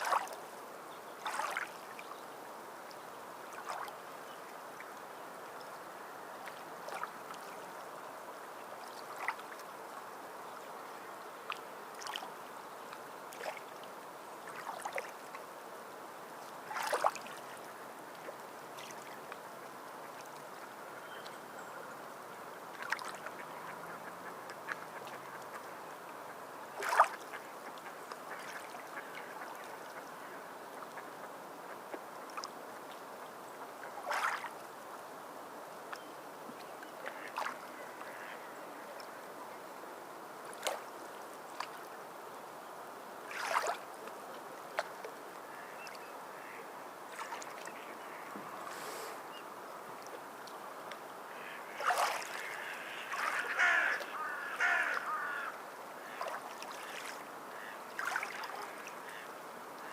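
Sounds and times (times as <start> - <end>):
sea water lapping and splashing: 0.0 - 0.4, 1.2 - 2.2, 3.4 - 4.1, 6.0 - 10.1, 11.5 - 12.4, 13.3 - 15.5, 16.4 - 20.8, 22.7 - 25.8, 26.7 - 33.0, 33.8 - 34.9, 36.6 - 39.2, 40.5 - 42.0, 43.2 - 49.3, 49.9 - 59.9.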